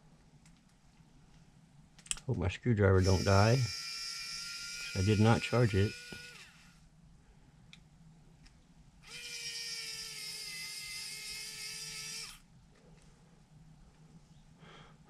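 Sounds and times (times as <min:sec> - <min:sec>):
electric screwdriver motor whining: 0:03.0 - 0:06.8, 0:09.0 - 0:12.4.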